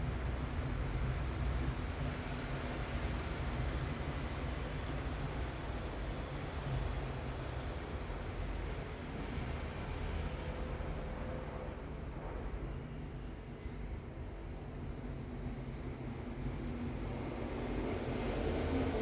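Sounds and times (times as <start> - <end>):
bird chirping: 0.5 - 0.8, 3.6 - 4.0, 6.6 - 7.0, 10.4 - 10.8.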